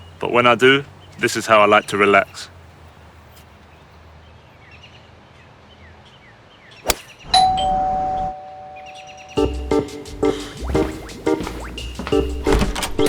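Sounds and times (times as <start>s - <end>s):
sharp click: 6.9s - 7.2s
two-tone doorbell chime: 7.4s - 9.6s
faint bird chirps: 8.7s - 9.4s.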